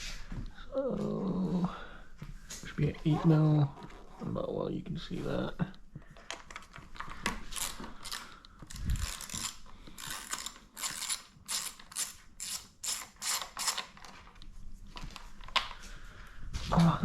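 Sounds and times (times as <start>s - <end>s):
ratchet wrench clicking: 8.9s - 13.8s.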